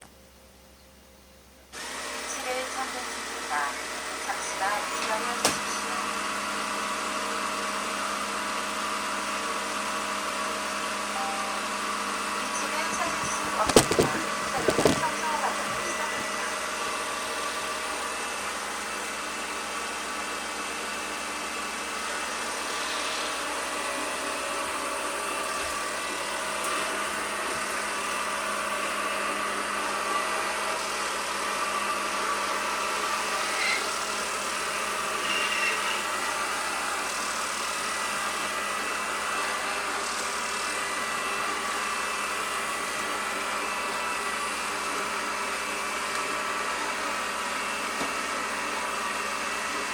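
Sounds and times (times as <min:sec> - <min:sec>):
robot vacuum whirring: 0:11.2 - 0:49.9.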